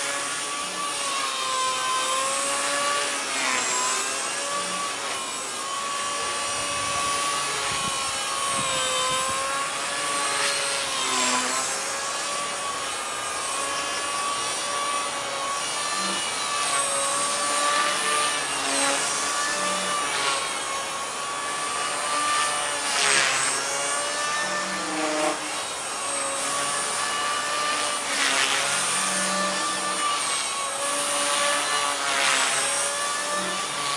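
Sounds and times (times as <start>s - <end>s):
rc helicopter whine: 0.0s - 33.9s.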